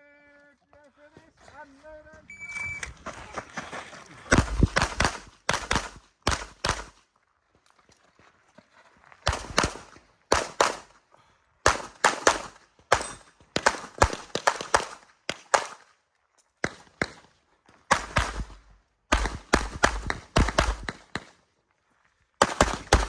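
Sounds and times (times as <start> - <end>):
pistol shots in pairs: 4.3 - 7.0, 9.3 - 11.0, 11.6 - 15.9, 16.6 - 21.4, 22.4 - 23.0.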